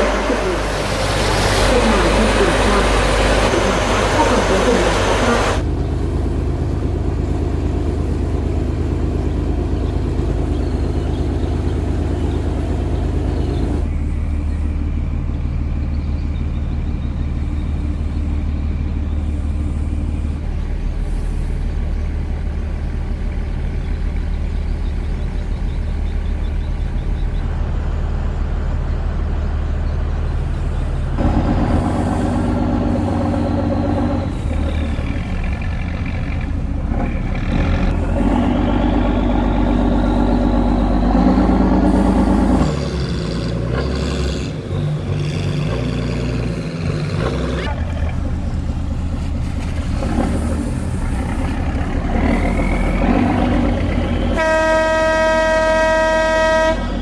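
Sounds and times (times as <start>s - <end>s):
boat engine running: 0.0s - 57.0s
horn blasts: 54.3s - 57.0s.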